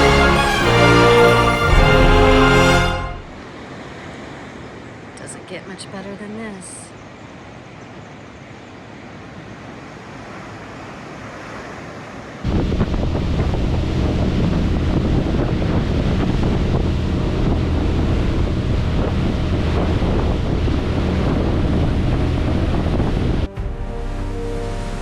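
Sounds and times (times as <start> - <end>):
water rushing and splashing: 0.0 - 25.0
wind buffeting microphone: 12.4 - 23.7
boat motor running: 12.5 - 25.0.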